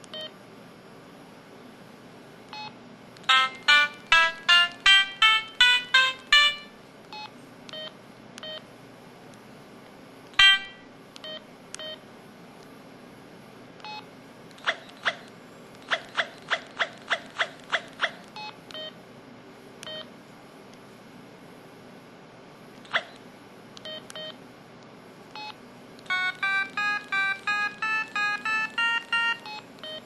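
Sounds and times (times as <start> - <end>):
phone speaker synthesized beeps: 26.1 - 30.0.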